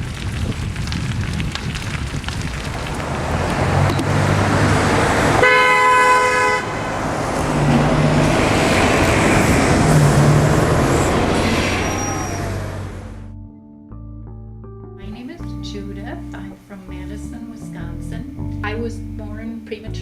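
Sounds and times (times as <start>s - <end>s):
road traffic passing: 2.7s - 13.3s
car horn honking: 5.4s - 6.9s.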